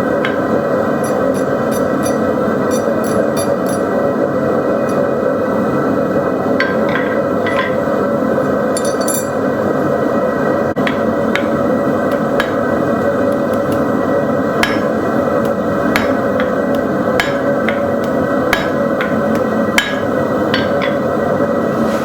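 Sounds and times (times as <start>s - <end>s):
hammer striking steel on anvil: 0.2s - 4.0s, 6.6s - 7.9s, 8.8s - 9.4s, 10.8s - 12.7s, 14.6s - 21.2s.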